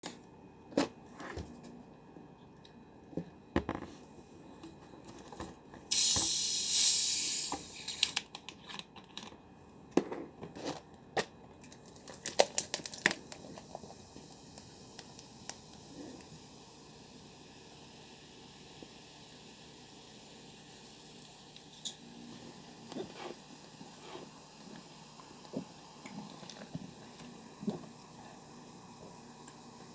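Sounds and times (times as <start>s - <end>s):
hiss of gas escaping: 5.9s - 8.2s.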